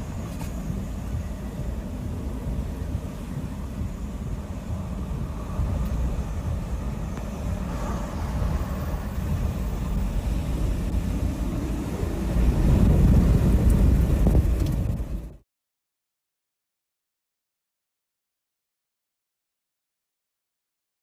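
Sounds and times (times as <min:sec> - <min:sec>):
storm wind buffeting microphone: 0:00.0 - 0:15.4.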